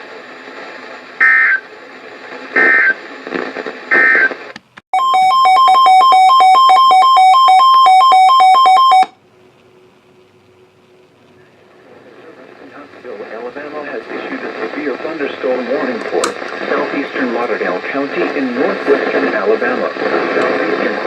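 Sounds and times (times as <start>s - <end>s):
alternating electronic alert beep: 3.9s - 4.3s.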